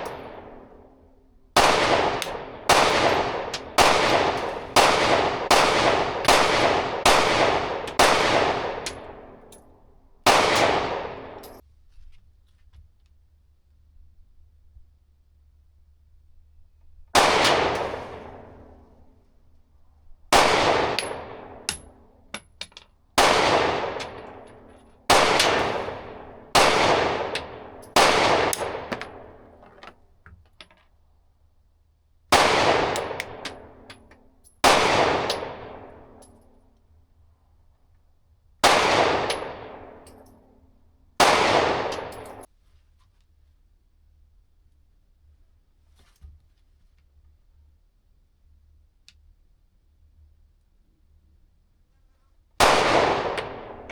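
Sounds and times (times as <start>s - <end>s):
pistol shots echoing: 0.0s - 0.9s, 1.6s - 9.5s, 10.2s - 11.6s, 17.2s - 18.8s, 20.3s - 22.0s, 23.2s - 29.6s, 32.3s - 33.9s, 34.6s - 36.2s, 38.6s - 40.2s, 41.2s - 42.5s, 52.6s - 53.9s.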